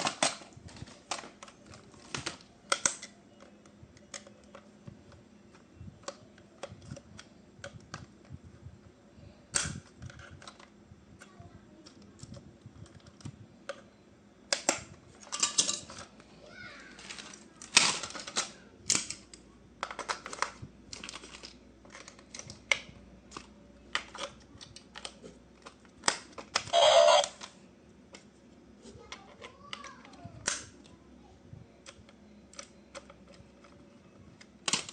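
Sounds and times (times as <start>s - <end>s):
plastic toy parts clicking: 0.0s - 8.1s, 9.5s - 13.8s, 17.0s - 27.5s, 29.1s - 30.8s, 31.8s - 33.8s, 34.4s - 34.9s.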